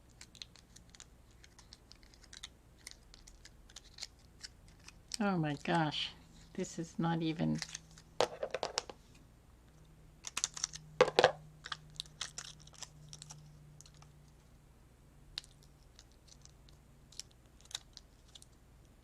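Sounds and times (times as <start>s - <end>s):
craft materials clicking and crinkling: 0.0s - 5.7s.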